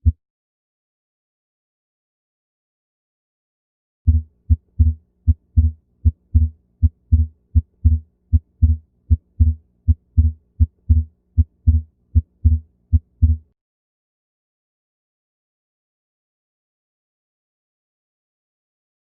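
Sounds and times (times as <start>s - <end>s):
heart beating: 4.1s - 13.4s.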